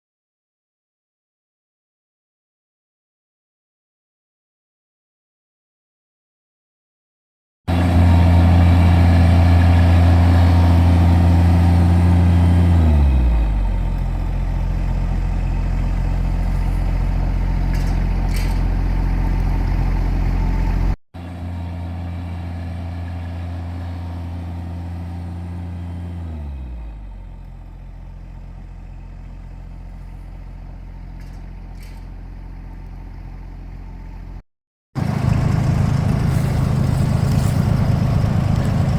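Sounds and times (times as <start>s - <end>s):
large engine revving and idling: 7.7s - 34.4s, 35.0s - 38.9s.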